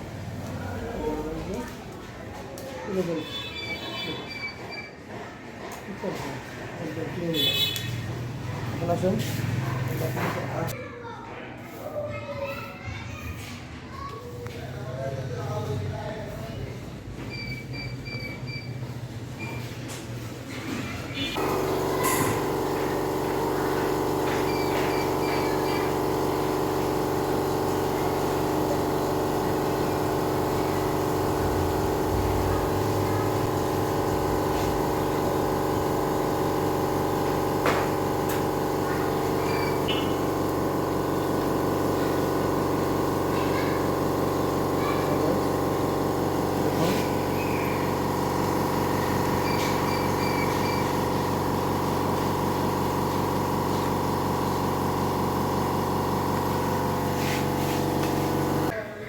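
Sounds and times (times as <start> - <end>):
machine humming: 21.4 - 58.7.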